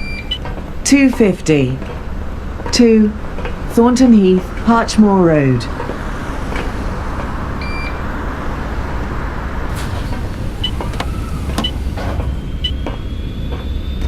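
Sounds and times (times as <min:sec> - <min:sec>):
bodywork rattles and knocks: 0:00.0 - 0:04.8
bus engine and road rumble: 0:00.0 - 0:14.0
faint rising whine: 0:02.0 - 0:14.0.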